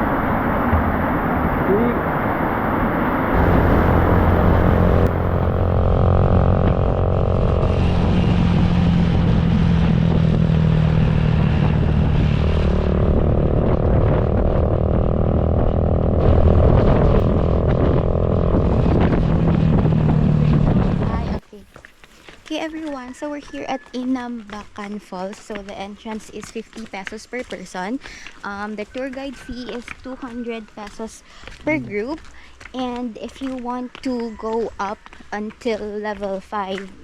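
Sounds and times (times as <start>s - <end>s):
vehicle engine changing speed: 0.0s - 22.7s.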